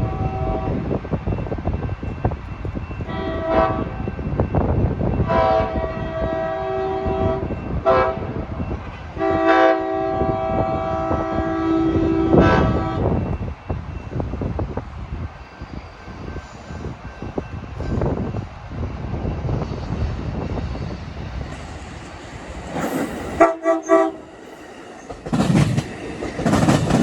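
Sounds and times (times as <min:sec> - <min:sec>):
train air horn blasts: 0:00.0 - 0:00.8, 0:03.1 - 0:04.0, 0:05.2 - 0:08.6, 0:09.2 - 0:13.1, 0:22.8 - 0:24.3
train rumbling: 0:00.0 - 0:27.0.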